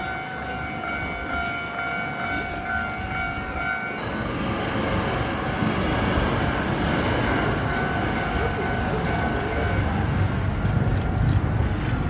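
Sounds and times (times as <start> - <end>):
level crossing bell ringing: 0.0 - 4.1
train rumbling past: 0.0 - 12.0.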